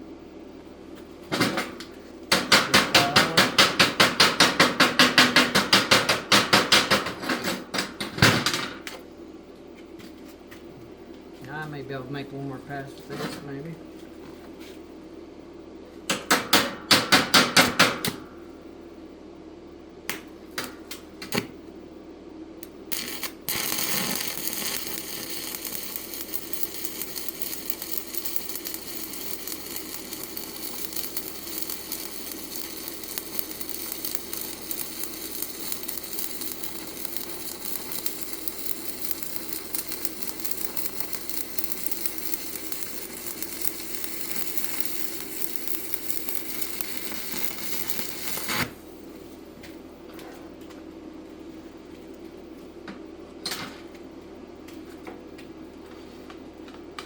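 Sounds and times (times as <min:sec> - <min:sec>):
welding arc crackling: 0:02.4 - 0:04.0, 0:22.6 - 0:49.0.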